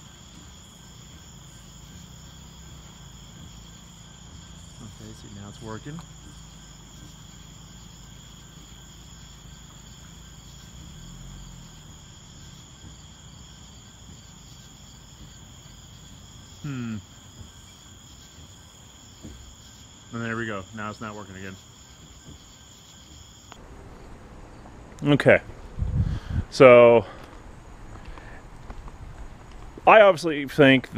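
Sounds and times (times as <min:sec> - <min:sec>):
crickets chirping: 0:00.0 - 0:30.9
low hum: 0:23.5 - 0:29.8.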